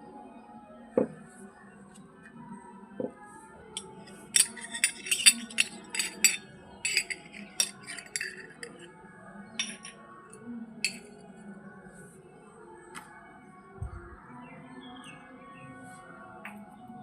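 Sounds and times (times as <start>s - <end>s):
soft background music: 0.0s - 17.0s
toy kitchen pieces clinking: 3.8s - 8.9s, 9.6s - 10.0s, 10.8s - 11.1s.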